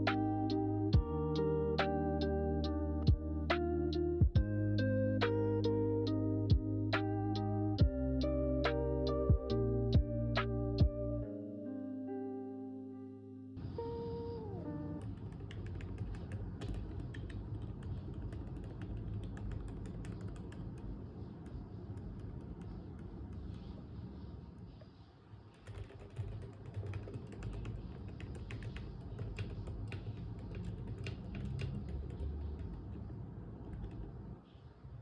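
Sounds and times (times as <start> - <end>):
typing on mechanical keyboard: 15.0 - 21.0, 25.5 - 33.0, 33.6 - 34.2.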